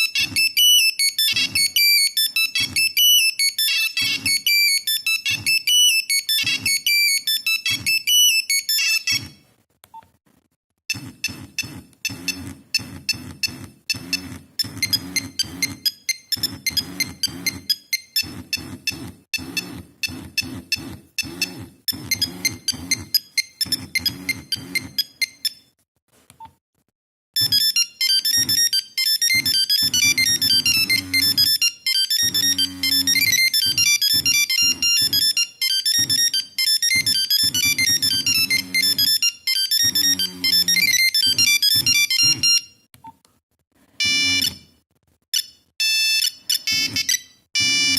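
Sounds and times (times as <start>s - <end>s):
monophonic phone ringtone beeps: 0.0s - 9.4s, 27.4s - 42.8s, 44.0s - 47.9s.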